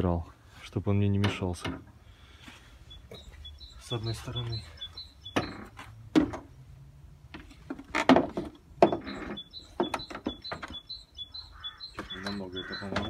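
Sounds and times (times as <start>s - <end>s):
faint bird chirps: 2.8s - 5.8s, 8.8s - 13.0s.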